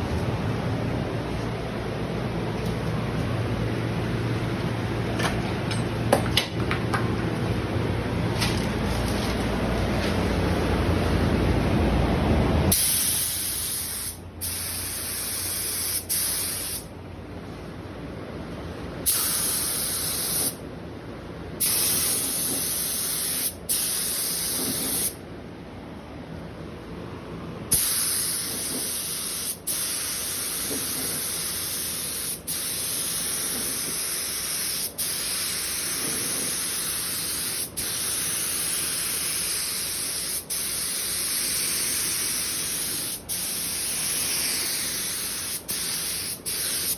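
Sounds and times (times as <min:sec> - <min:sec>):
paint spray gun hissing: 0:12.7 - 0:16.9, 0:19.1 - 0:20.6, 0:21.6 - 0:25.2, 0:27.7 - 0:46.9.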